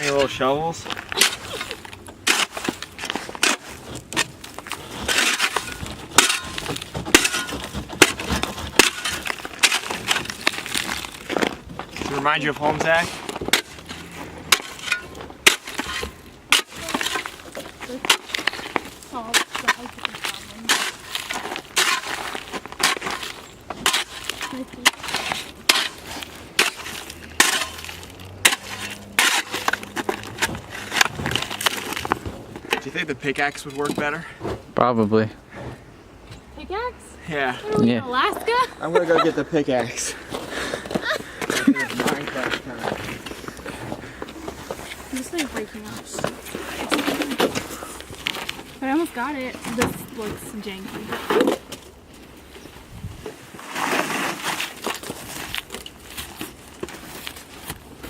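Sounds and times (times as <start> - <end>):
shovel scraping ice: 0.0 - 32.2, 53.5 - 57.8
shovel striking ice: 1.2 - 11.5, 14.5 - 32.2, 53.6 - 55.9.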